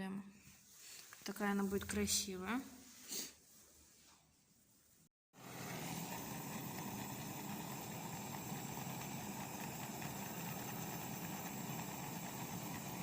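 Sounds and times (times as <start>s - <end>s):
blowtorch flame burning: 5.4s - 13.0s.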